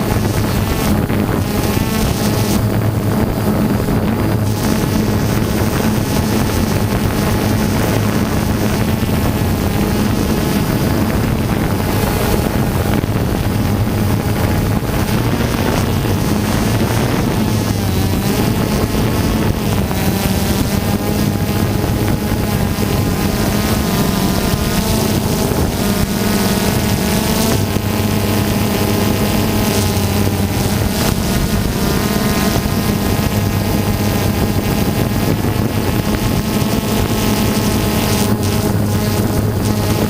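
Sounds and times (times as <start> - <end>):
drone propellers humming: 0.0 - 40.0
rushing air noise: 0.0 - 40.0.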